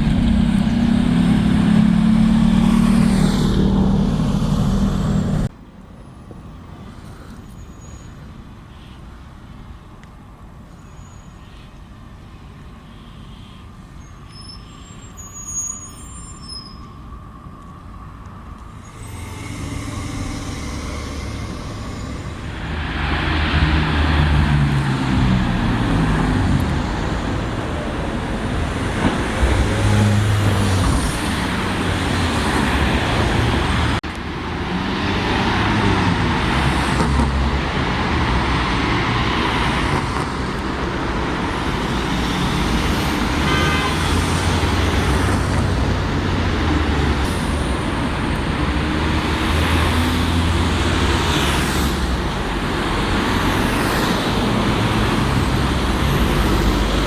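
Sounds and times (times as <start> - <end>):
heavy vehicle engine running: 0.0 - 5.5, 18.4 - 34.6
street traffic: 0.0 - 57.0.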